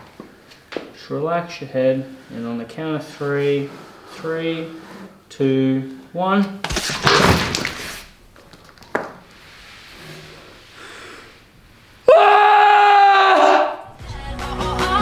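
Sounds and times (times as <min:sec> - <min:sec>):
person screaming: 0:12.1 - 0:13.9.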